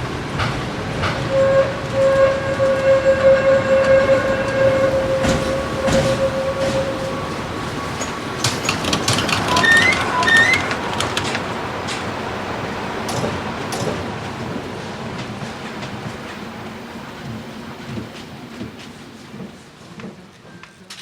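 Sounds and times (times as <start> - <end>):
tram running on rails: 0.0 - 21.0
wheel clicks over track: 8.0 - 12.1.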